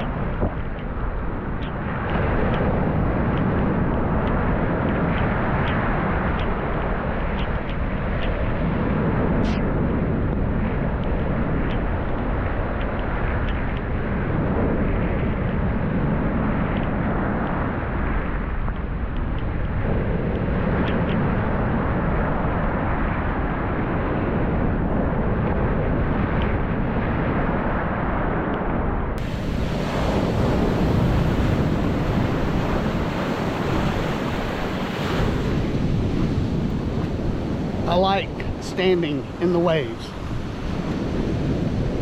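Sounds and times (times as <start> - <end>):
wind buffeting microphone: 0.0 - 42.0
ocean surf breaking: 29.2 - 42.0.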